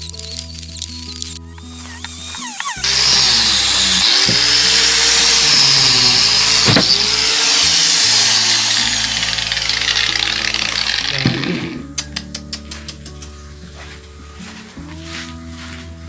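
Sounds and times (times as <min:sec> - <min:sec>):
angle grinder wire brush on steel: 0:00.0 - 0:11.8.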